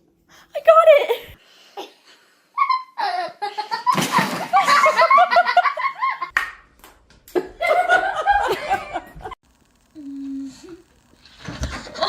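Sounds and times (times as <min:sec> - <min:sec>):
people laughing: 0:02.6 - 0:06.3, 0:07.4 - 0:09.4.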